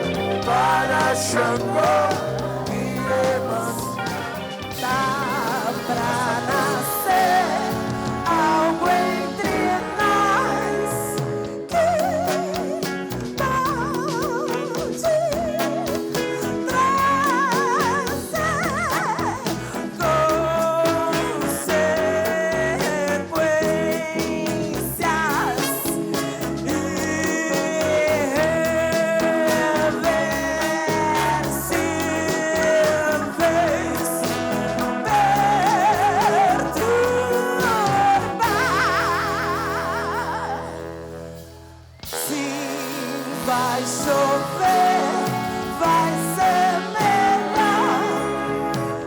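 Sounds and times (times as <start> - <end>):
singer holding long notes: 0.0 - 12.8, 25.0 - 49.0
live band playing: 0.0 - 49.0.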